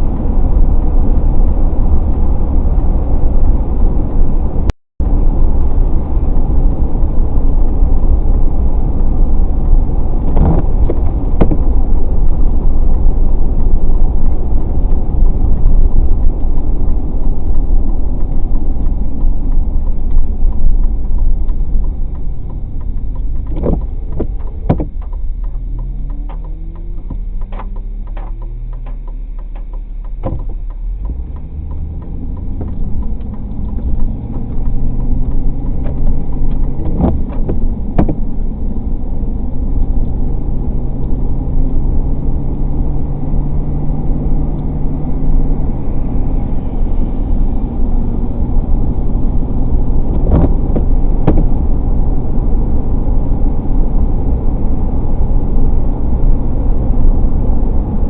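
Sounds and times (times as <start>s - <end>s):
engine and tyre rumble: 0.0s - 58.0s
sharp clicks: 17.4s - 38.2s.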